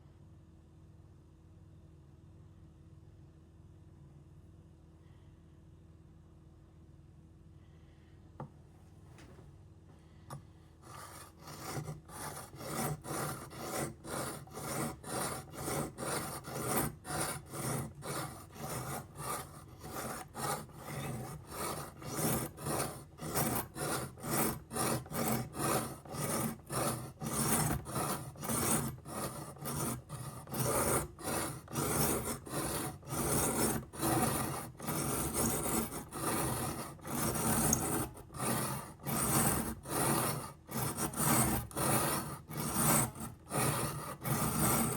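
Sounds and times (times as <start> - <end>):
knife rasping on sharpening stone: 10.8 - 44.9.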